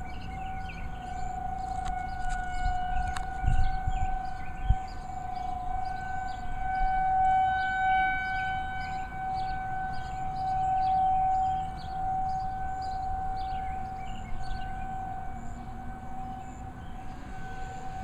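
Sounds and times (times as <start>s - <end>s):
warning siren steady tone: 0.0s - 18.0s.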